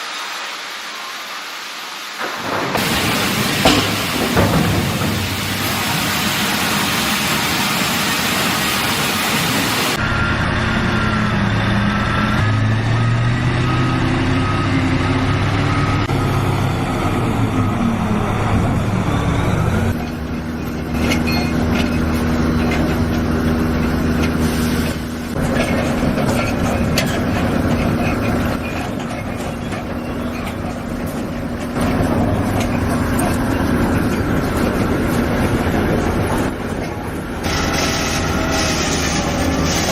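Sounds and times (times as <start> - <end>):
machinery rushing noise: 0.0 - 14.6.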